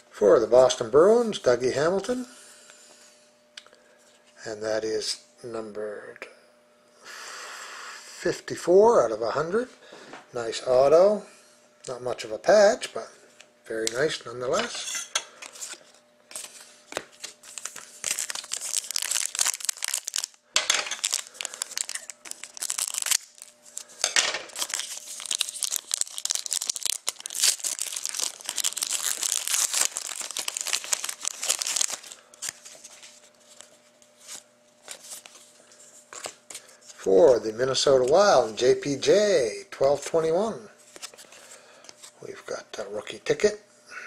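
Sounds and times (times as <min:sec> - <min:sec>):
wrappers tearing and crinkling: 0:15.4 - 0:35.5
cards being handled: 0:15.4 - 0:38.6, 0:40.8 - 0:42.2.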